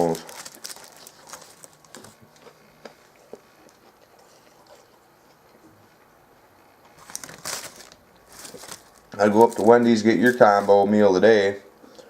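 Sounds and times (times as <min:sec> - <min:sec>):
packaging clicks and rustles: 0:00.0 - 0:02.2, 0:07.0 - 0:10.4
paper crinkling: 0:00.0 - 0:02.5, 0:06.9 - 0:10.9.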